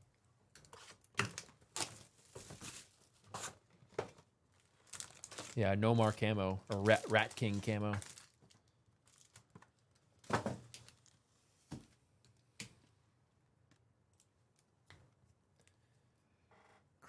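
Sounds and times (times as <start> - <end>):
foil wrapper rustling: 4.5 - 9.9.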